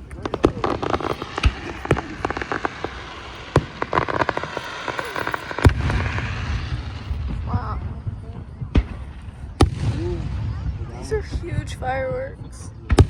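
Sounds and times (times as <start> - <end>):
fireworks booms: 0.0 - 13.0
fireworks crackling pops: 0.0 - 13.0.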